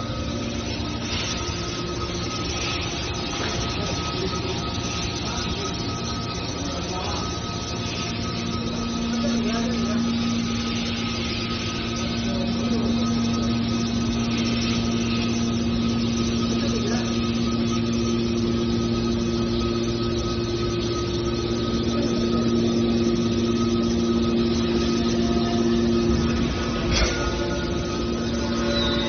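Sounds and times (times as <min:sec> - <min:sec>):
hydraulic baler machine hum: 0:00.0 - 0:29.0.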